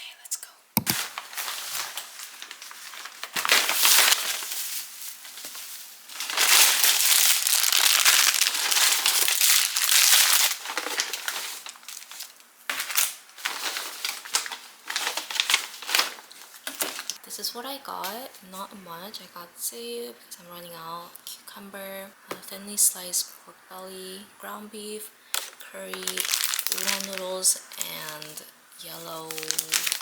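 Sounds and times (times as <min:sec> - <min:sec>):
shopping bag crinkling: 0:00.9 - 0:17.2, 0:25.4 - 0:30.0.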